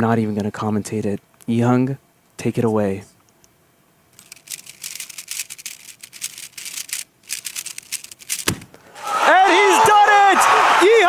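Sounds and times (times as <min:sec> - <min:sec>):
plastic cube clicking: 0:04.1 - 0:08.8.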